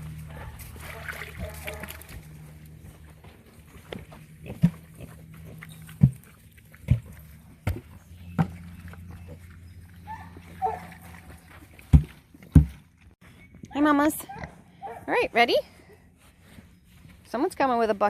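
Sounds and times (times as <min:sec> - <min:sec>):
pigs grunting: 0:04.1 - 0:07.4.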